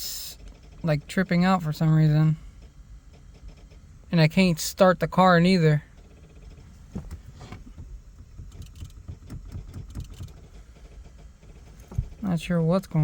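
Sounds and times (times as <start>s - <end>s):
relays clicking rapidly: 8.5s - 12.2s.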